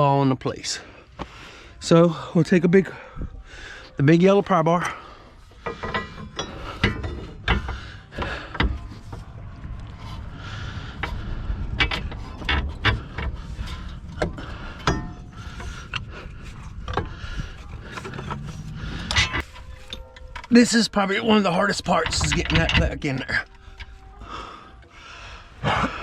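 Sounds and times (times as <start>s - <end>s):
pry bar clanking on metal: 4.8s - 9.3s, 11.0s - 24.0s.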